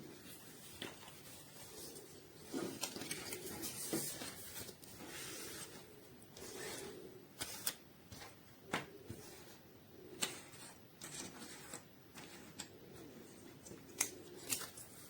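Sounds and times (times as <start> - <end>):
soft rustling and rubbing: 0.0 - 9.6.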